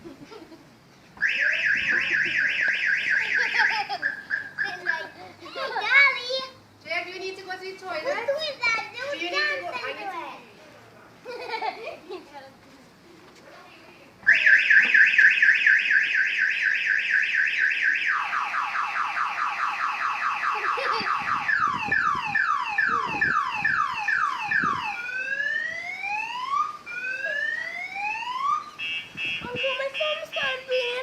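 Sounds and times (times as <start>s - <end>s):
car alarm siren: 1.2s - 5.0s, 14.3s - 30.4s.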